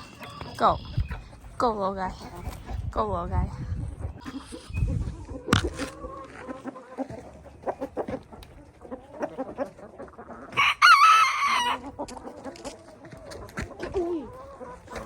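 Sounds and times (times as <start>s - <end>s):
chickens clucking: 0.0s - 15.0s
rooster crowing: 10.6s - 11.8s.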